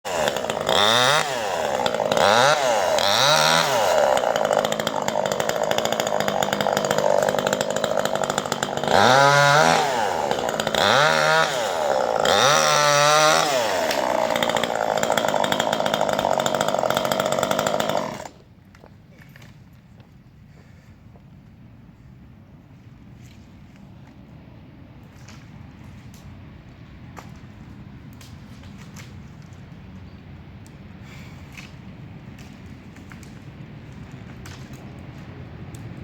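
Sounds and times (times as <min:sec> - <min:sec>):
chainsaw engine revving: 0:00.0 - 0:18.4.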